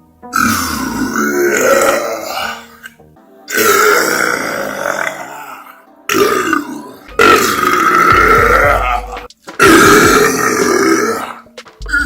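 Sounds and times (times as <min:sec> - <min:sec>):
long loud burp: 0:00.3 - 0:11.5.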